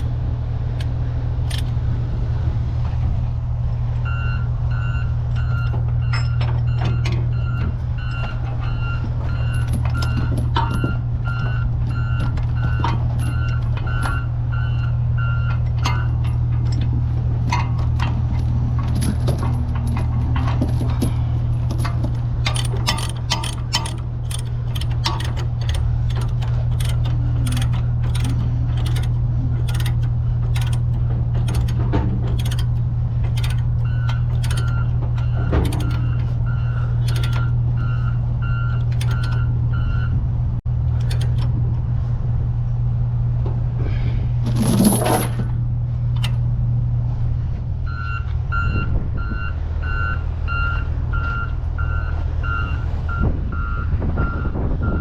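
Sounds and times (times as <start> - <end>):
excavator diesel engine running: 0.0 - 55.0
travel alarm beeping: 4.0 - 16.2, 33.3 - 40.2, 47.8 - 55.0
quick metallic clanks: 18.9 - 36.1, 40.9 - 41.6.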